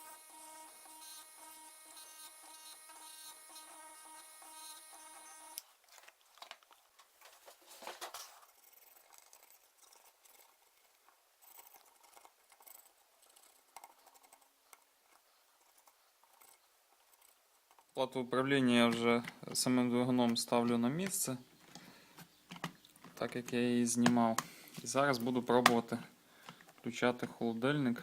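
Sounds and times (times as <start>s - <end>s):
electrical hum: 0.0s - 5.6s
small parts clicking and rustling: 0.3s - 18.0s, 21.0s - 25.3s.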